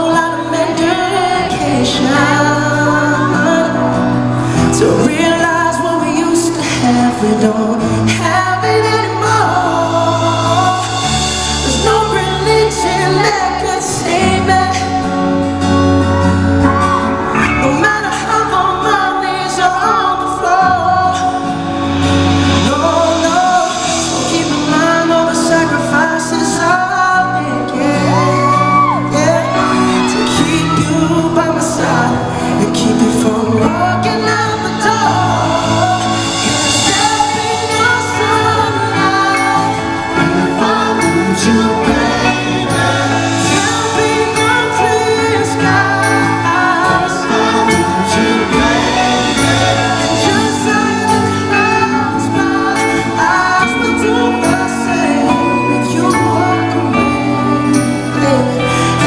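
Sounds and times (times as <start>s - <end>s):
band playing pop ballad: 0.0s - 59.0s
crowd shouting and whooping: 12.6s - 19.2s, 27.4s - 32.4s.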